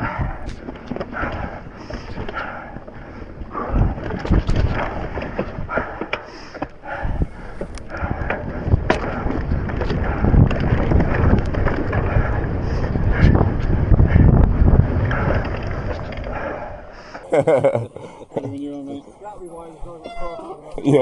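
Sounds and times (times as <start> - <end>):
bike rattling and knocking: 0.0 - 16.8
bike tyres rumbling over dirt: 0.0 - 17.2
rider breathing hard: 0.0 - 17.3
wind buffeting microphone: 0.0 - 17.6.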